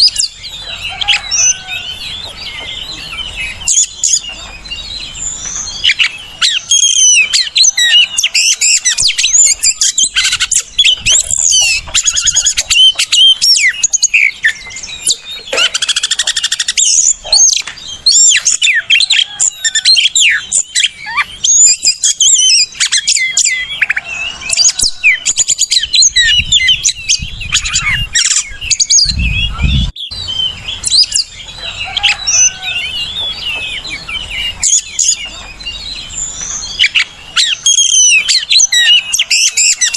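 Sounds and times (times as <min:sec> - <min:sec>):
bird singing whistles and trills: 0:00.0 - 0:39.9.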